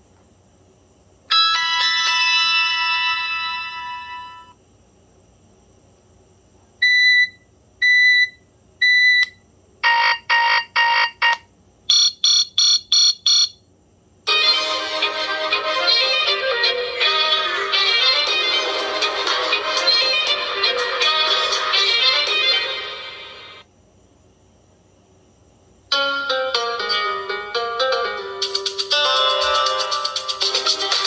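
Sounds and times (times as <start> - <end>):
ringtone melody: 1.3 - 4.5, 14.3 - 23.2, 25.9 - 31.0.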